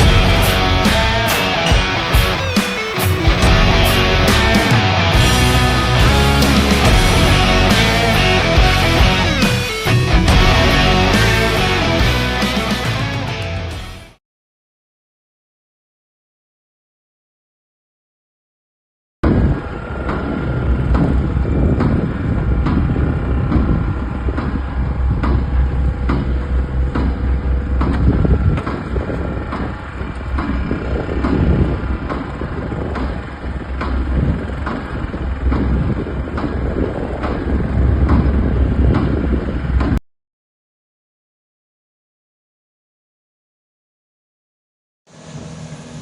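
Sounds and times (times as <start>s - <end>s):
sharp metallic knocks: 1.6s - 3.8s
excavator engine rumble: 19.6s - 40.0s.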